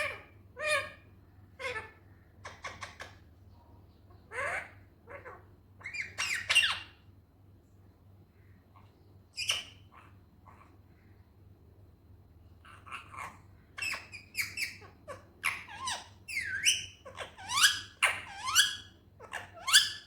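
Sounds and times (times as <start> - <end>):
parrot harsh calls and chatter: 0.0 - 3.3, 4.1 - 7.1, 8.8 - 10.8, 12.6 - 20.0.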